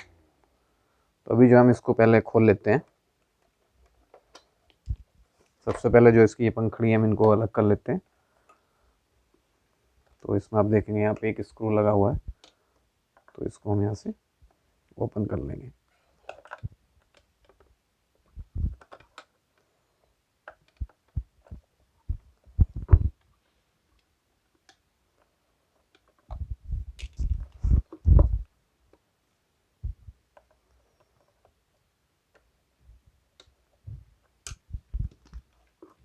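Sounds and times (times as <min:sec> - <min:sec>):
handling knocks and dull bumps: 0:20.6 - 0:23.2, 0:26.2 - 0:28.5, 0:33.9 - 0:36.0.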